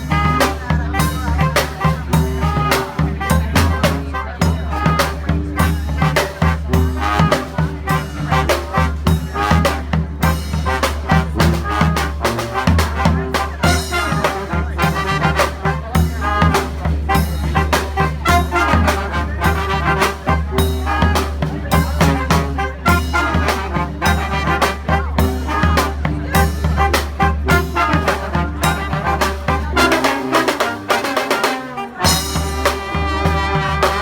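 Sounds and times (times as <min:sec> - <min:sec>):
brass horns: 0:00.0 - 0:34.0
steady drumbeat: 0:00.0 - 0:34.0.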